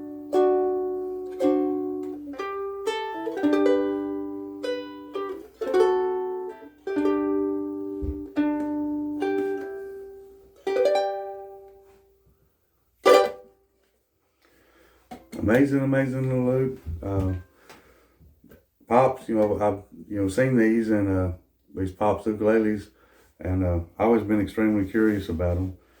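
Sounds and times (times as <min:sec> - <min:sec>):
ukulele chords strummed: 0:00.0 - 0:12.2, 0:13.0 - 0:13.7, 0:15.1 - 0:17.4.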